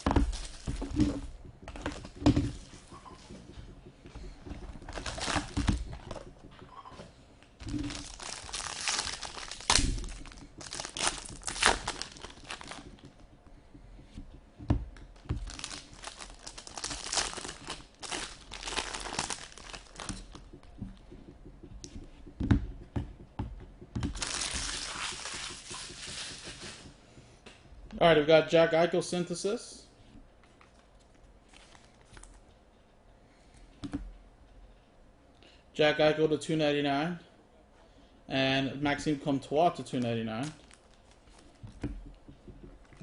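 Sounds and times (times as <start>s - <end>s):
wrapper crinkling and ripping: 4.9s - 5.6s, 7.6s - 13.0s, 15.4s - 20.4s, 24.1s - 26.9s, 40.4s - 41.6s.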